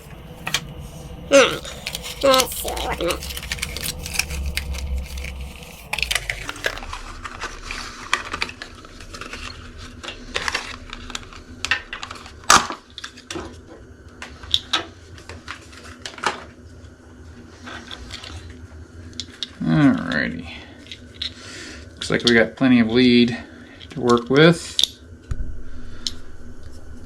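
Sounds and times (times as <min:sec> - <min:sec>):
loud knock: 0:25.3 - 0:27.0.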